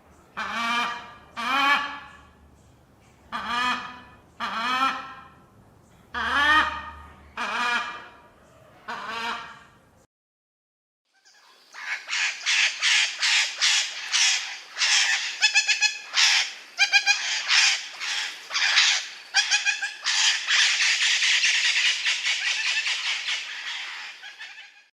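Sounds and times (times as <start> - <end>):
parrot screeching: 11.8 - 24.9.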